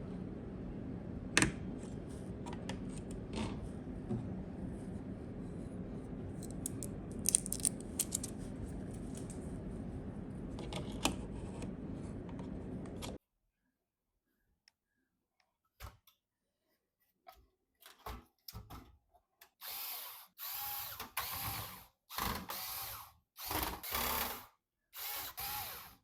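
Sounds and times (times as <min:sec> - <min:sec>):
steady low hum: 0:03.8 - 0:13.2
pc parts clicking and scraping: 0:06.4 - 0:09.4.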